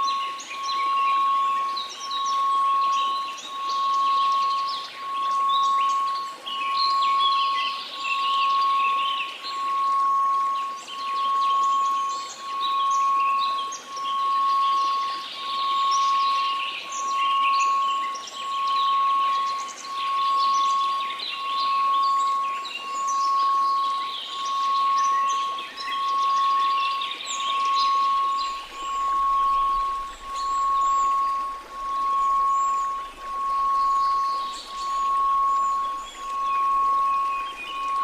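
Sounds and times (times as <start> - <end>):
birds chirping: 0.0 - 38.0
faint white noise hiss: 0.0 - 38.0
steady tone: 9.5 - 38.0.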